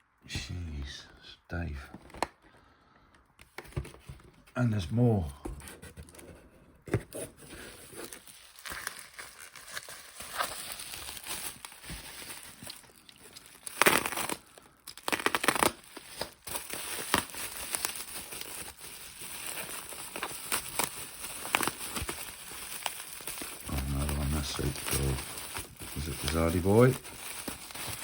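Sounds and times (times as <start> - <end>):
packaging crinkling and rustling: 5.5 - 28.0
packaging tearing: 7.5 - 28.0.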